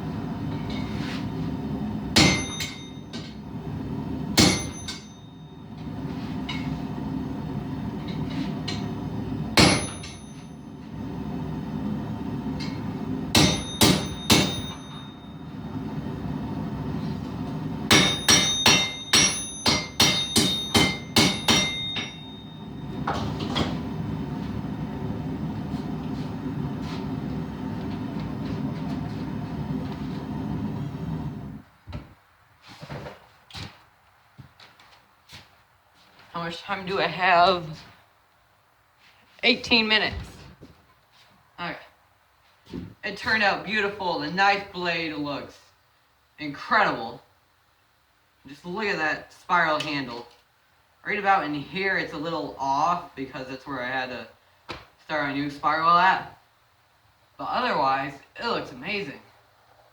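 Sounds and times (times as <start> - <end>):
steady hum: 0.0 - 31.6
hammer striking steel on anvil: 2.1 - 3.3, 4.4 - 5.2, 9.6 - 10.4, 13.3 - 15.2, 17.9 - 22.6.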